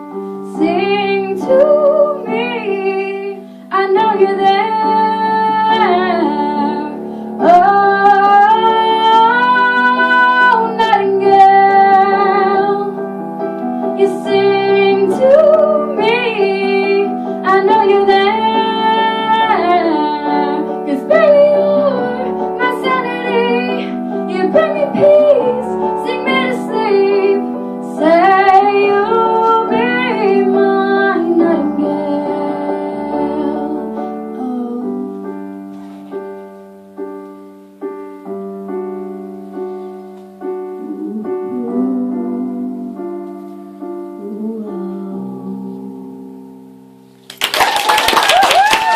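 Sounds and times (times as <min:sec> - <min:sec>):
piano chords: 0:00.0 - 0:48.9
woman singing with vibrato: 0:00.4 - 0:13.0, 0:14.0 - 0:35.4, 0:40.8 - 0:43.0, 0:44.2 - 0:46.2.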